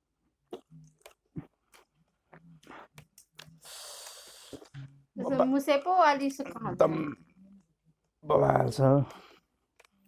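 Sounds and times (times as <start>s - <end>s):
person chewing food: 0.5s - 4.8s
soft mouth clicks: 2.6s - 4.8s
breathy hiss: 3.6s - 4.7s.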